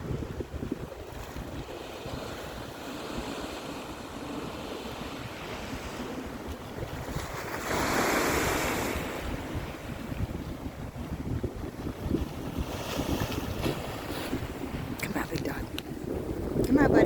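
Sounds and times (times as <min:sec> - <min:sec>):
waves breaking on shore: 0:00.0 - 0:17.0
wind buffeting microphone: 0:00.0 - 0:17.0.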